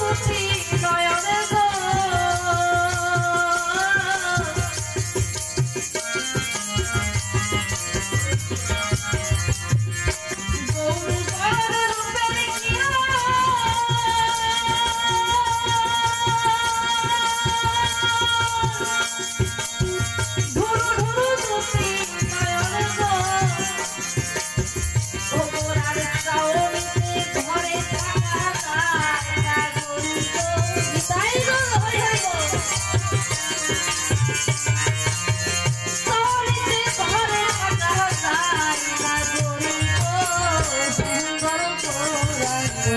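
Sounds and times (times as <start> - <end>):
person singing over loudspeakers: 0.0 - 4.8, 10.7 - 19.6, 20.2 - 24.5, 36.0 - 42.9.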